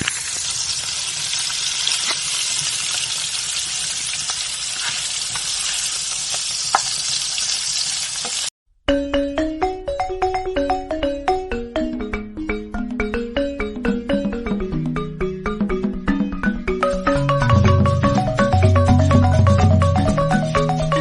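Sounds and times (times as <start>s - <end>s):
food sizzling in hot oil: 0.0s - 8.5s
music with mallet notes: 8.9s - 21.0s.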